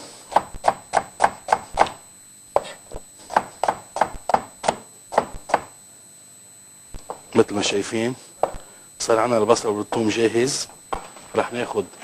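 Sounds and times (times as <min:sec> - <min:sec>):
knife chopping on cutting board: 0:00.3 - 0:02.0, 0:02.6 - 0:05.7.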